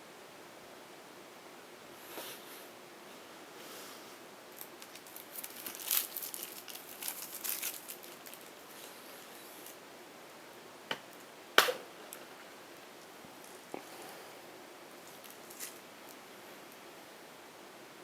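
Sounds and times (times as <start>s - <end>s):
crinkly rustles: 3.8s - 9.8s, 12.1s - 14.1s, 14.9s - 16.9s.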